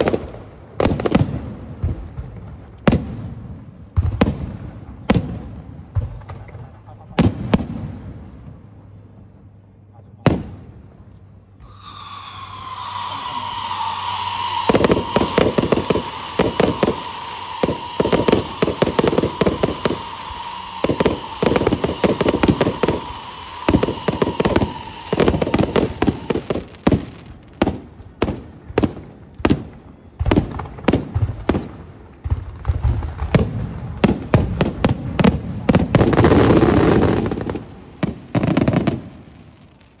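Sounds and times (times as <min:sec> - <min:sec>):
firework bangs: 0:00.0 - 0:08.8, 0:10.2 - 0:40.0
firework whistle: 0:11.5 - 0:39.8.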